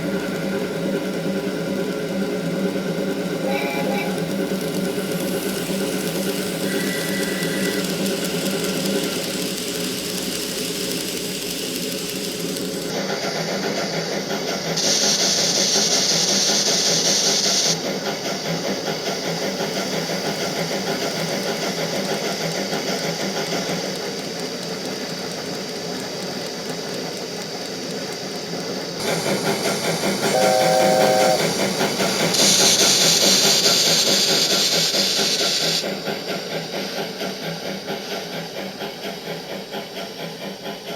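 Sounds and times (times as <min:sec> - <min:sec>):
loud hissing steam: 0:00.0 - 0:40.9
steam locomotive chuffing: 0:00.0 - 0:40.9
train whistle toot: 0:03.4 - 0:04.3, 0:06.6 - 0:07.9, 0:30.2 - 0:32.8.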